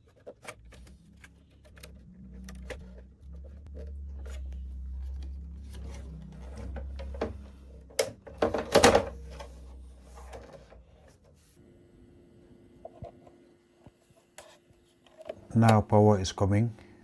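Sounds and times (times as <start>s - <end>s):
low steady hum: 0.0s - 17.0s
plastic parts clattering: 8.0s - 10.8s.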